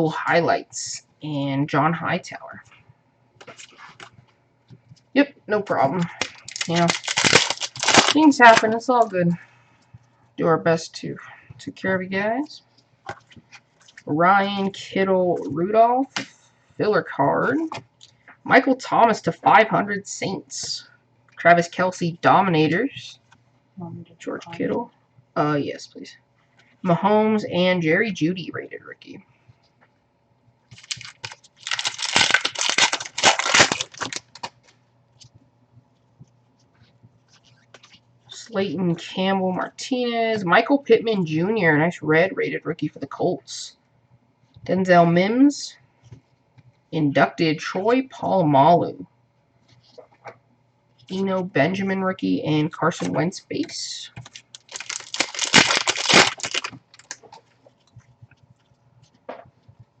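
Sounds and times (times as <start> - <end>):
plastic wrapper crinkling: 3.4 - 4.3, 5.9 - 9.1, 30.7 - 35.3, 54.1 - 59.7.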